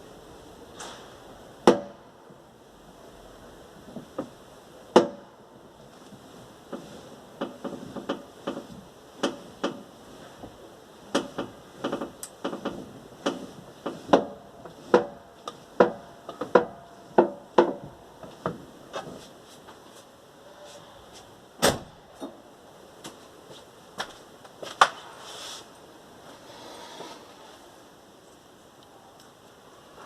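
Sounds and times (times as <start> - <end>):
sharp metallic knocks from car: 1.6 - 2.0, 4.9 - 5.3, 11.1 - 15.2, 15.8 - 19.1.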